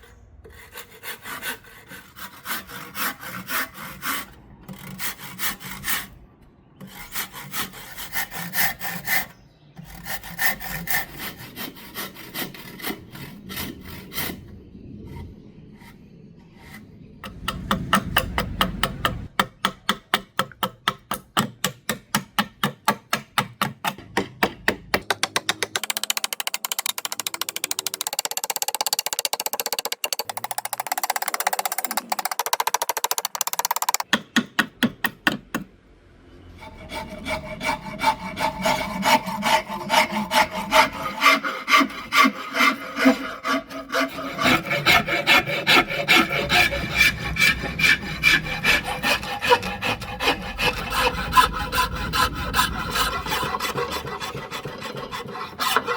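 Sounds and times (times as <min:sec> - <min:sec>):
hand tool rasping hardwood: 0:16.6 - 0:35.7, 0:36.6 - 0:55.9.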